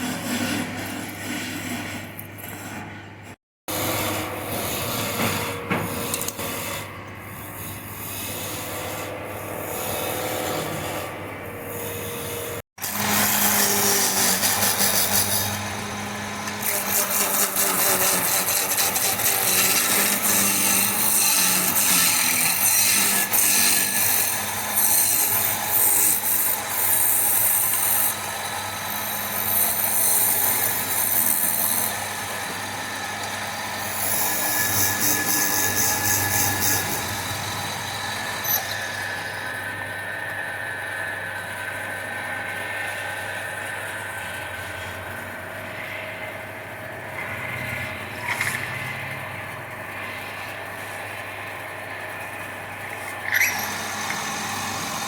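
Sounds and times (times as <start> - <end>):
turning tool scraping wood: 0.0 - 6.9, 12.2 - 39.6
wood lathe motor running: 3.7 - 55.0.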